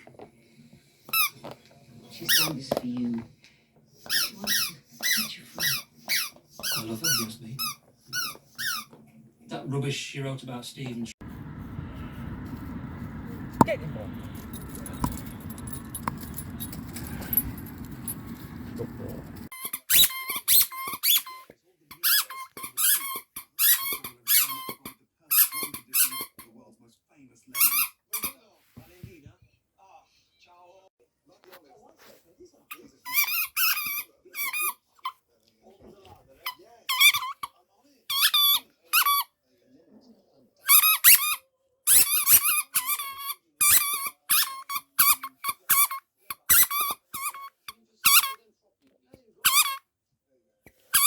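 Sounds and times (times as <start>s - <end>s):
squeaky dog toy squeaking: 4.0s - 9.0s, 17.6s - 26.5s, 27.5s - 28.4s, 33.0s - 35.2s, 36.4s - 37.5s, 38.1s - 39.4s, 40.6s - 48.4s, 49.4s - 49.9s
dog chewing: 11.2s - 19.5s.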